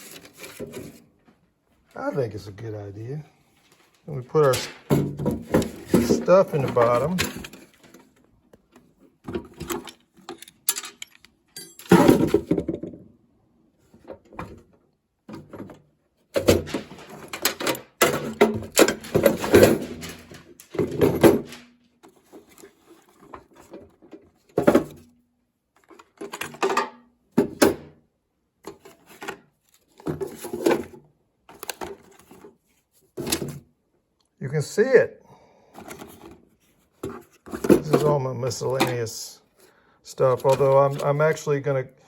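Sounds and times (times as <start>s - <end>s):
tools clattering in metal toolbox: 4.4s - 8.0s, 9.4s - 12.6s, 16.4s - 22.6s, 26.0s - 27.8s.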